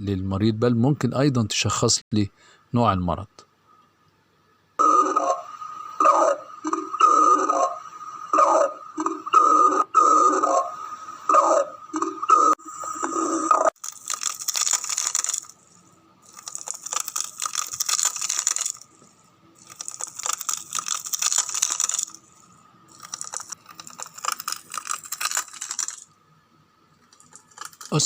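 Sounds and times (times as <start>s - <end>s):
dense high crackling: 12.3s - 19.0s, 19.6s - 26.2s, 27.1s - 28.0s.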